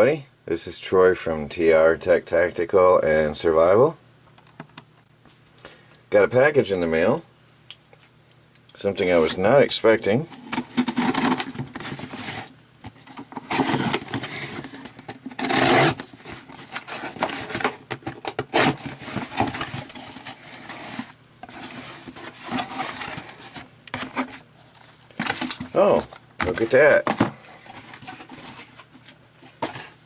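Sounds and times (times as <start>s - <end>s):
packaging scraping and rustling: 10.3s - 30.0s.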